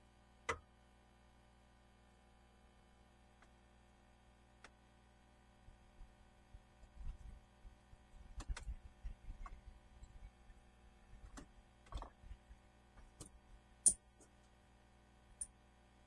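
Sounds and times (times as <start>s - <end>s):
light clicks and taps: 8.1s - 10.3s, 11.1s - 14.6s.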